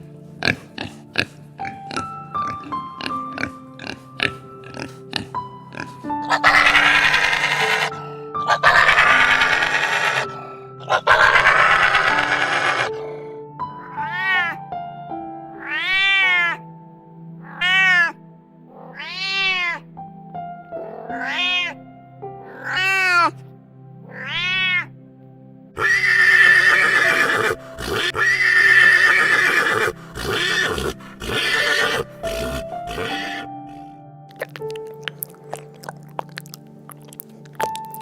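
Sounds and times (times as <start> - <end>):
rough noisy animal call: 0.0 - 13.0, 17.4 - 19.8, 20.8 - 21.8, 22.4 - 23.4, 24.1 - 25.0, 25.8 - 33.9
background music with held notes: 0.0 - 38.0
cat meowing: 6.3 - 7.9, 8.5 - 10.2, 13.8 - 14.6, 15.6 - 16.6, 17.4 - 18.2, 18.8 - 19.8, 21.0 - 21.8, 22.5 - 23.4, 24.1 - 25.0.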